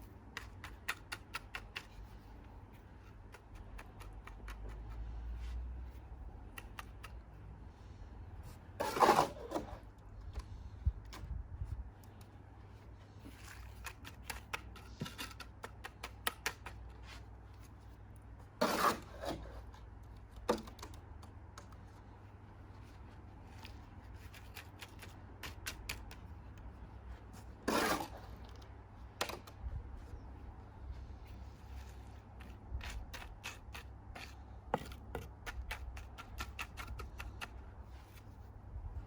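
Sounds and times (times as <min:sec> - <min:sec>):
cement scraping: 0:08.8 - 0:09.9, 0:18.4 - 0:20.9, 0:27.2 - 0:28.6.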